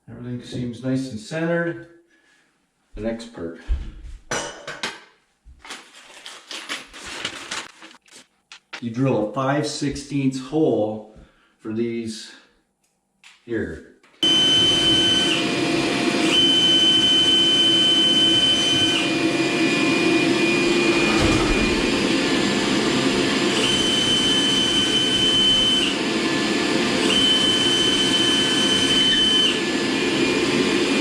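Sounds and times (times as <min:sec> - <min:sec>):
power drill drilling into drywall: 0:14.2 - 0:31.0.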